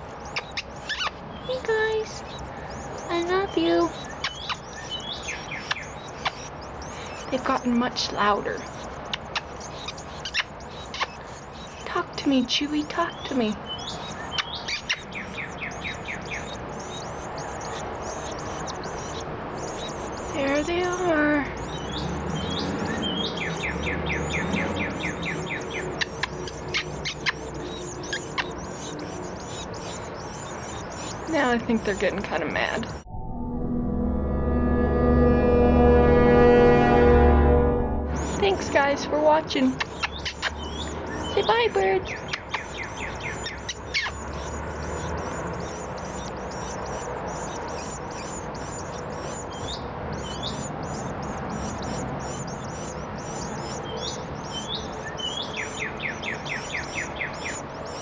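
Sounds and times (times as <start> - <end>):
low background noise: 0.0 - 33.1
nestling birds chirping: 0.0 - 33.1, 34.0 - 58.0
downward-sweeping bird calls: 0.0 - 58.0
low steady hum: 27.5 - 39.8.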